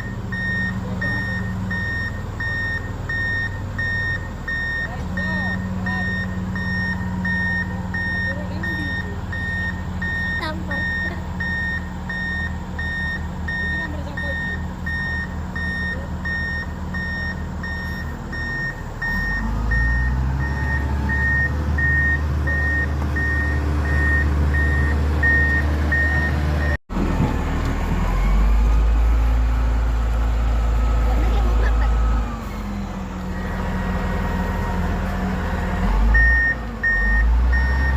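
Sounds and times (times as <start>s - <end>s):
reversing alarm beeping: 0.0s - 26.8s, 36.0s - 37.9s
heavy machine engine running: 0.0s - 37.9s.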